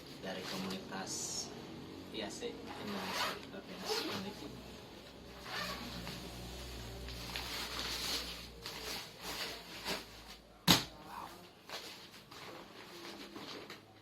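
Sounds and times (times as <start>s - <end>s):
tent fabric rustling: 2.7s - 10.4s.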